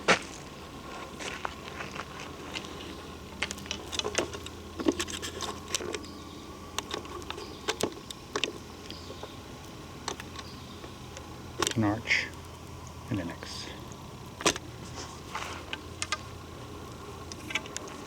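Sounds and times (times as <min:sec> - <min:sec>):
footsteps on forest trail: 0:00.0 - 0:07.6, 0:14.7 - 0:15.9
faint steady hum: 0:00.0 - 0:18.0.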